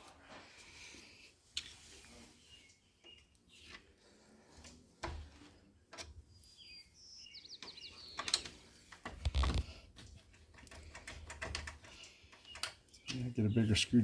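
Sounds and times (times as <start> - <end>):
bird chirping: 2.4 - 3.7, 6.3 - 8.7, 11.9 - 14.0.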